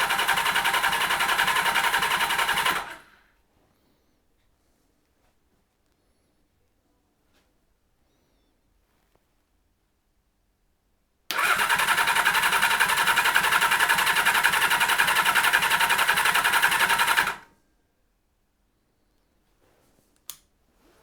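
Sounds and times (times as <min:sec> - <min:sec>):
engine cranking on starter: 0:00.0 - 0:03.2, 0:11.3 - 0:17.5.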